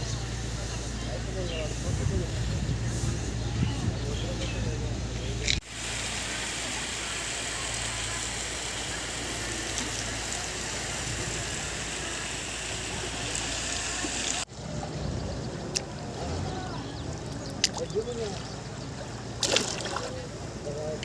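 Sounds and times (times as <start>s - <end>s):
floodwater rushing: 17.1s - 21.0s.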